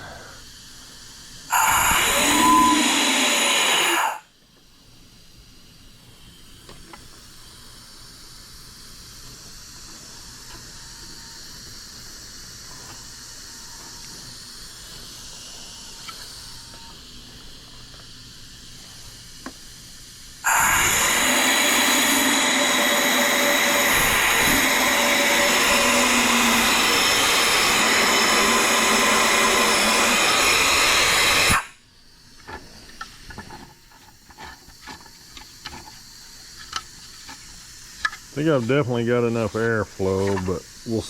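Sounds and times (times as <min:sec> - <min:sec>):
steam whistle blowing: 0:01.5 - 0:04.2, 0:20.4 - 0:31.7
low steady hiss: 0:31.7 - 0:41.0.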